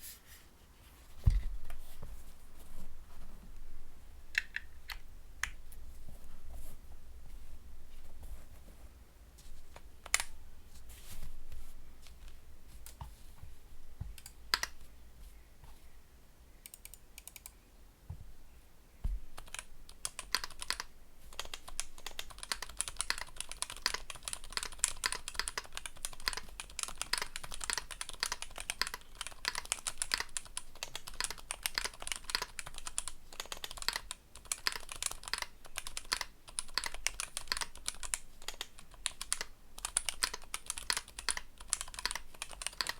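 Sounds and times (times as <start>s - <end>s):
mechanical keyboard typing: 14.2s - 14.8s, 16.7s - 17.5s, 19.4s - 42.9s.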